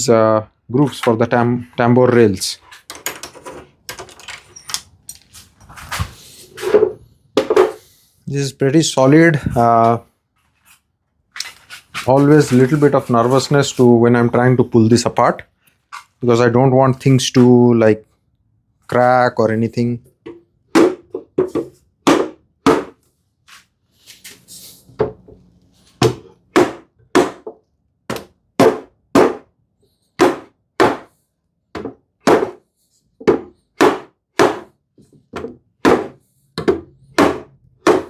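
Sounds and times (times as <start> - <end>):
hammer knocking on wooden frame: 26.0 - 29.4, 30.2 - 31.1, 31.8 - 32.6, 33.2 - 34.7, 35.4 - 38.0.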